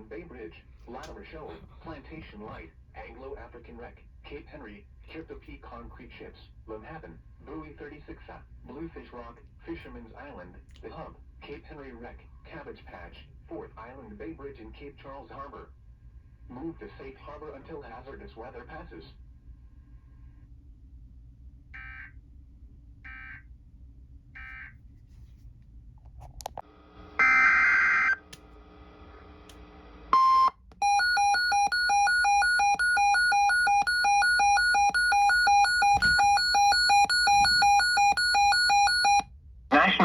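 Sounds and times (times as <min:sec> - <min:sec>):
alarm beeping steadily: 0:27.2 - 0:28.2, 0:30.2 - 0:39.2
faint electronic blips: 0:30.2 - 0:39.2.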